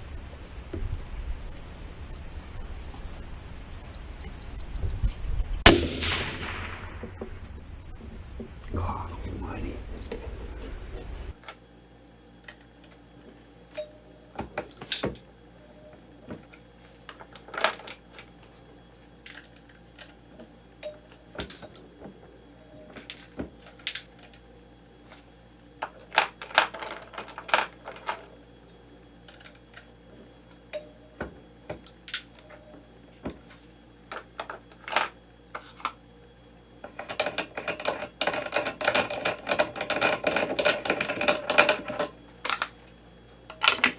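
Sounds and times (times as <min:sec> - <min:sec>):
steady noise: 0:00.0 - 0:11.4.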